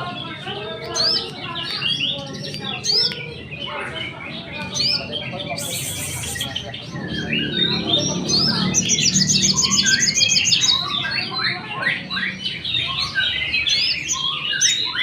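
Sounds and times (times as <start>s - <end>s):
bird singing chirps and whistles: 4.8s - 15.0s.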